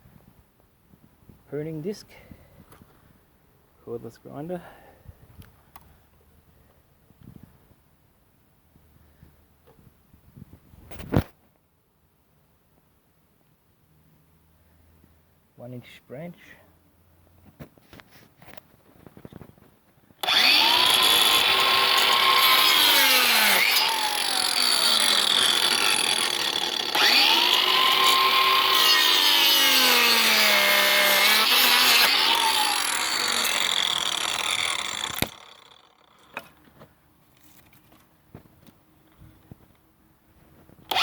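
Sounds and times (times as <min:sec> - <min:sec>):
angle grinder cutting wood: 0:20.2 - 0:36.6.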